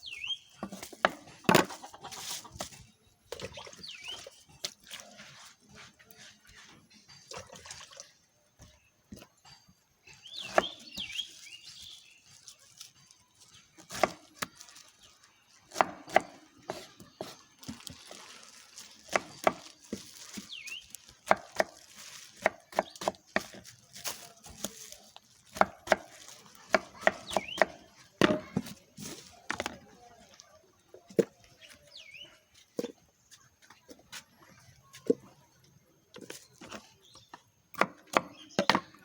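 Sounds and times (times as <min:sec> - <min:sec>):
knife chopping on a board: 0:15.7 - 0:17.4.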